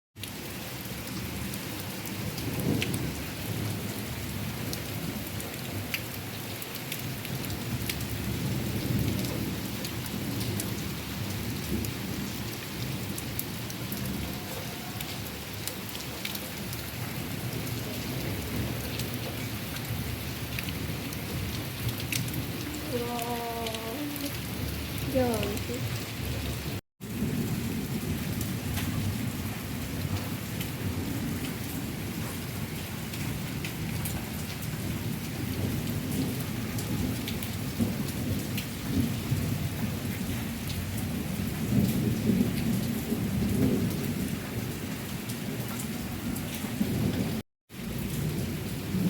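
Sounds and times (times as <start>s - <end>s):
steady rain falling: 0.2s - 49.0s
thunder rumbling: 16.6s - 49.0s.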